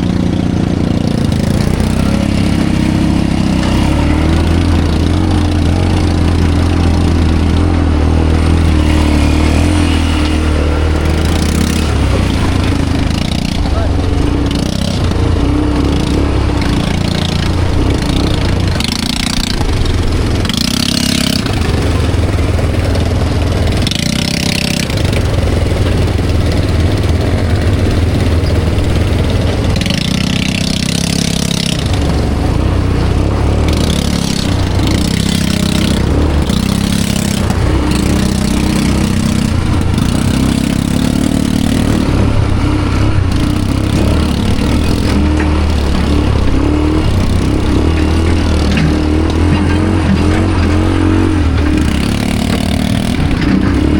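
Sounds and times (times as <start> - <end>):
atv engine revving: 0.0 - 53.9.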